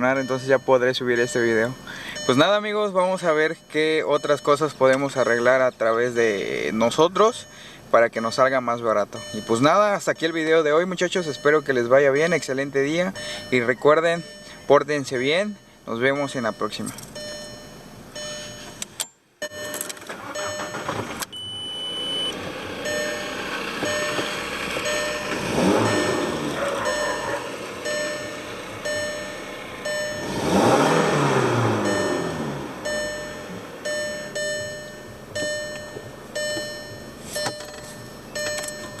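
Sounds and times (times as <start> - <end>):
car engine starting and running: 0.0 - 39.0
electronic chime beeping: 19.4 - 39.0
electronic ding: 31.8 - 39.0.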